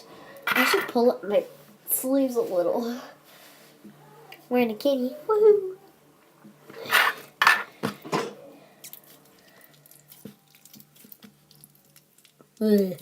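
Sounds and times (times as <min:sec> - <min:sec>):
slime squelching: 0:08.8 - 0:13.0.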